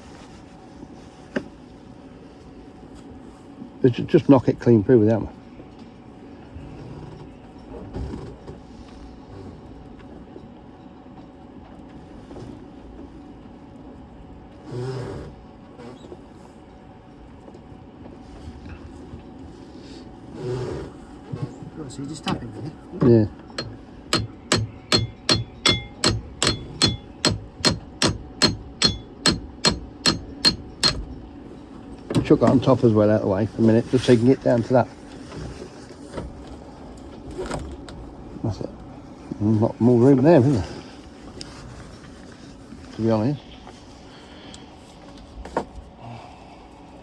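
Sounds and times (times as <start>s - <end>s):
low steady rumble: 11.9s - 47.0s
hammer tapping on metal: 23.5s - 31.0s
dull knock: 23.6s - 31.0s.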